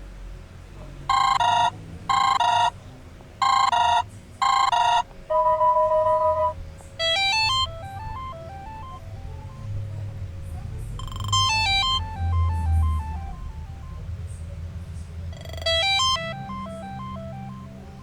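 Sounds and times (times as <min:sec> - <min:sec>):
electronic phone ringtones: 0:01.1 - 0:02.8, 0:03.4 - 0:10.1, 0:11.0 - 0:14.1, 0:15.4 - 0:18.0.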